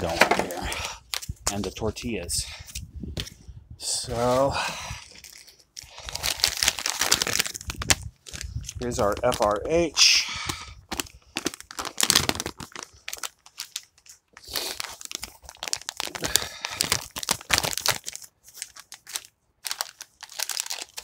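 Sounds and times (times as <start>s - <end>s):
plastic packaging crinkling: 5.0s - 9.7s, 10.4s - 21.0s.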